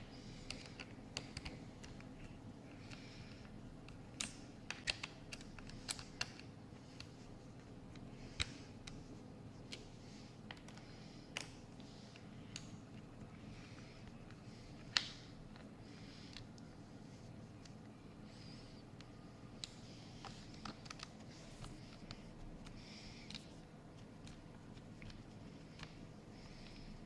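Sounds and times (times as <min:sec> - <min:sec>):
low steady hum: 0:00.0 - 0:27.0
laptop keyboard typing: 0:00.2 - 0:02.1, 0:04.1 - 0:07.1.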